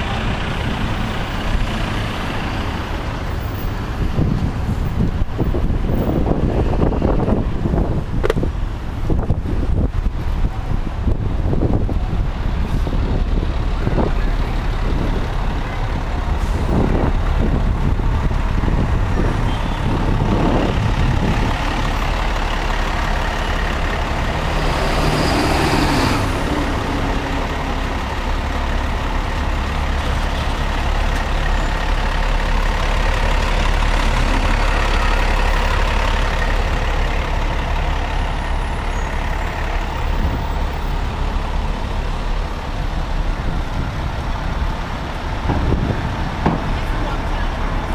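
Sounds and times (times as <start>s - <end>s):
diesel engine idling: 0.0s - 47.9s
dull knocks: 45.4s - 46.8s.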